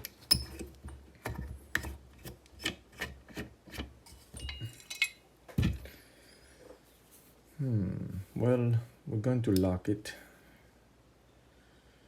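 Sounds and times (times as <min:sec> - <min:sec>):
metal clicks and scraping in a lock: 0:00.0 - 0:03.9.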